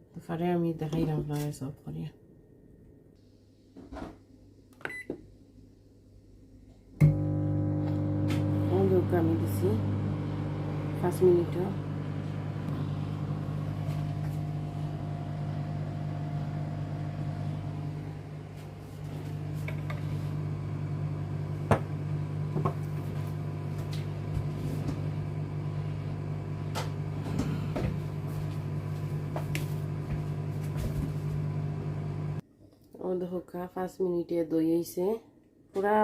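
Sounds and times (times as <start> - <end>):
microwave oven humming: 7.0 - 32.4.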